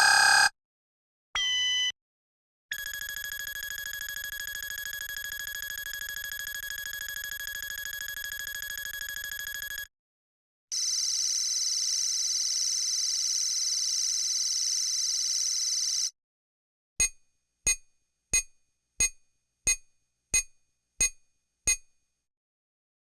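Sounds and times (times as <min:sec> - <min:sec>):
long high buzzing electronic tone: 0:00.0 - 0:00.5.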